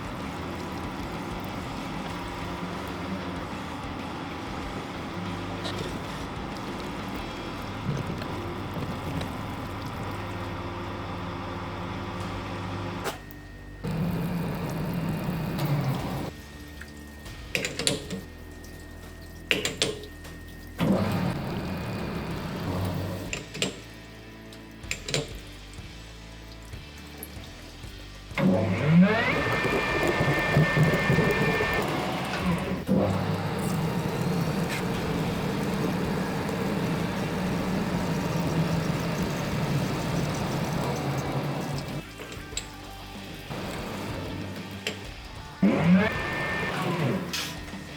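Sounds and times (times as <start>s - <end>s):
liquid splashing: 0.0s - 10.8s, 20.5s - 47.9s
metal lathe machining: 0.0s - 47.9s.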